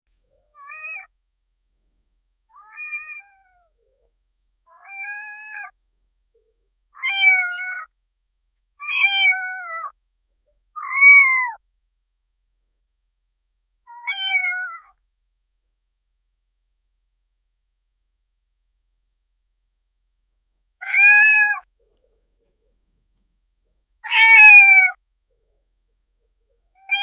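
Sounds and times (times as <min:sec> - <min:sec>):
cat meowing: 0:00.5 - 0:01.1, 0:02.5 - 0:03.7, 0:04.7 - 0:05.8, 0:07.0 - 0:07.9, 0:08.8 - 0:09.9, 0:10.8 - 0:11.6, 0:13.9 - 0:15.0, 0:20.8 - 0:21.7, 0:24.0 - 0:25.0, 0:26.8 - 0:27.0.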